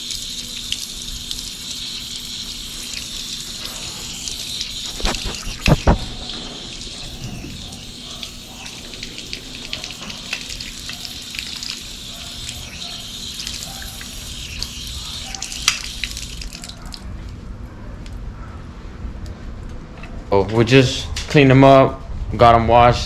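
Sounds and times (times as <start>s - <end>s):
running water splashing: 0.0s - 16.9s.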